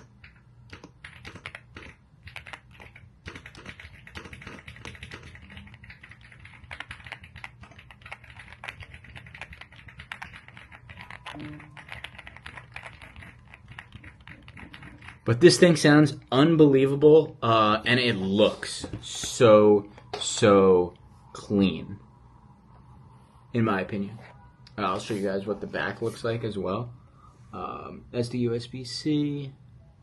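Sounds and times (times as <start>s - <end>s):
mechanical keyboard typing: 0.0s - 15.3s.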